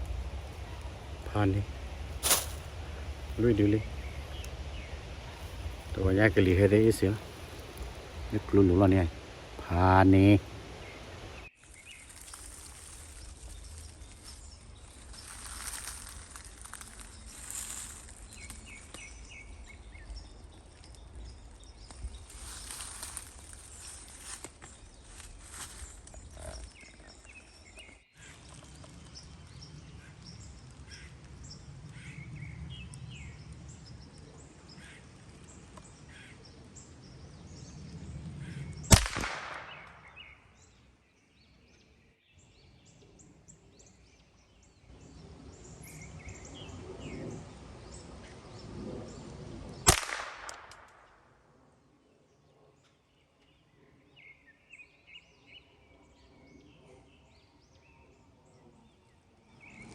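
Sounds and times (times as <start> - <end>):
birds chirping faintly: 0.0 - 39.0
rifle shots: 38.9 - 40.1, 49.9 - 51.0.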